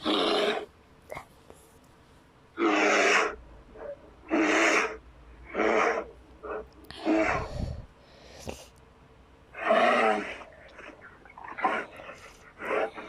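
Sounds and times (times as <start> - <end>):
rasping creature calls: 0.0 - 0.7, 2.6 - 7.8, 9.5 - 13.0.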